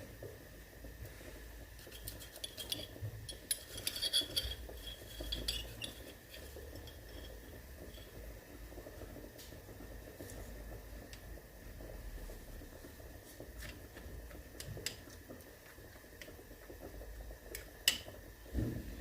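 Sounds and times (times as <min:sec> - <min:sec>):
glassware and cutlery clinking: 0:01.9 - 0:07.5.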